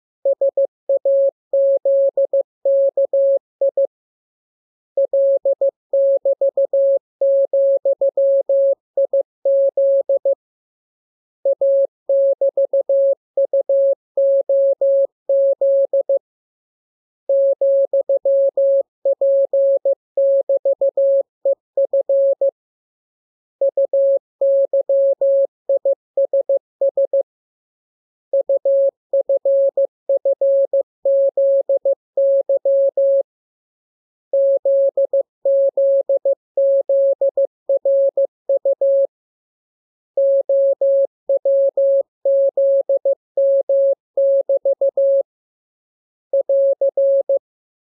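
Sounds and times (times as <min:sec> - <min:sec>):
morse code tone: 0:34.3 - 0:39.1, 0:40.2 - 0:45.2, 0:46.3 - 0:47.4.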